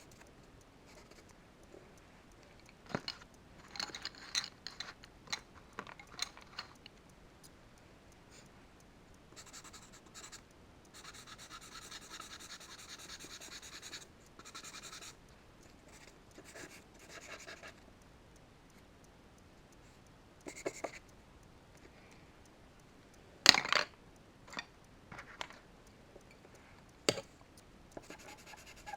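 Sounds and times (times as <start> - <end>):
charcoal scratching on paper: 11.0 - 15.2, 28.0 - 28.9.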